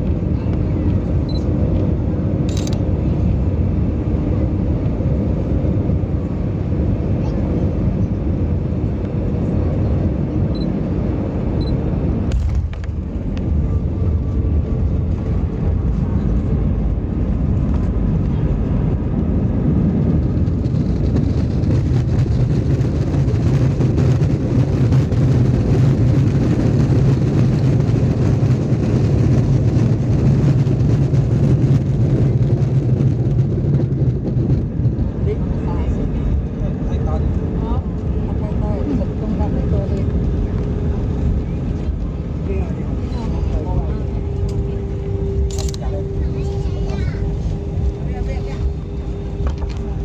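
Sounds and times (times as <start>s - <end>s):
airplane cabin engine and airflow noise: 0.0s - 50.0s.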